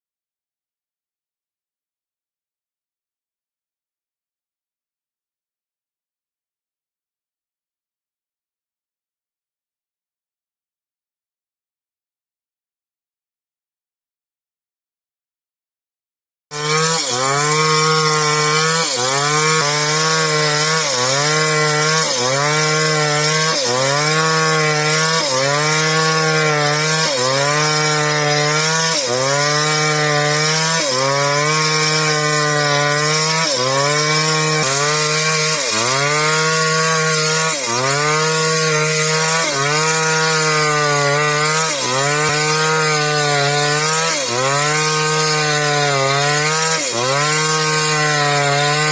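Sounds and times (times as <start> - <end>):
chainsaw cutting wood: 16.5 - 48.9.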